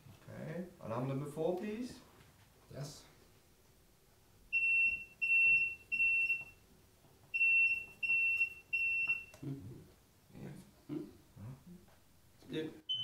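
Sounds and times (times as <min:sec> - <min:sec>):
smoke alarm beeping: 0:04.5 - 0:06.6, 0:07.3 - 0:09.4.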